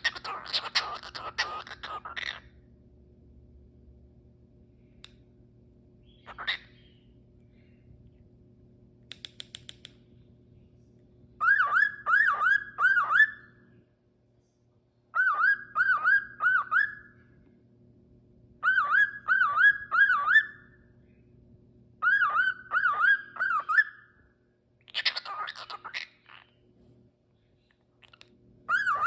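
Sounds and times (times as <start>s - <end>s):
sharp clicks: 9.1s - 10.0s
cockatiel whistling: 11.4s - 13.4s, 15.2s - 17.1s, 18.6s - 20.7s, 28.7s - 29.0s.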